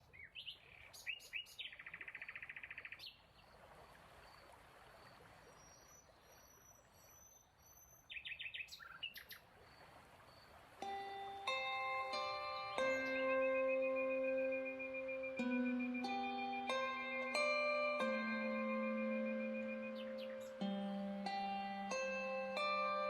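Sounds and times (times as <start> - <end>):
songbirds chirping: 0.0 - 23.0
plucked harp note: 10.8 - 23.0.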